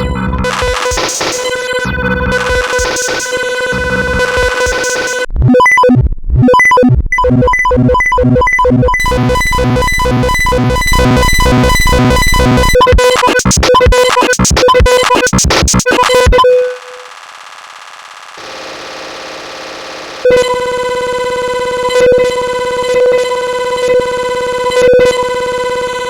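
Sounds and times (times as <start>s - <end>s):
steady synthesized tone: 0.0s - 5.6s, 9.0s - 26.0s
rapid chopped electronic pulsing: 0.4s - 25.5s
beeping tones: 0.5s - 17.1s.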